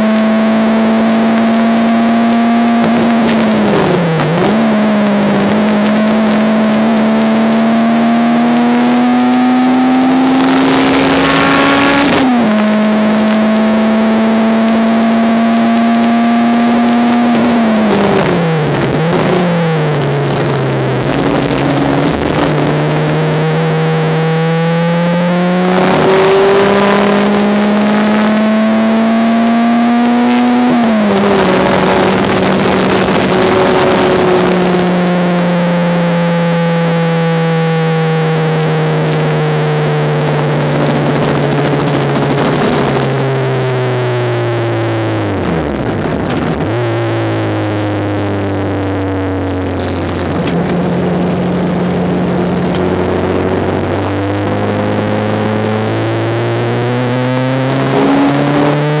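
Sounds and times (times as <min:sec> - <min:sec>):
race car engine revving: 0:00.0 - 0:59.0
road and wind roar: 0:00.0 - 0:59.0.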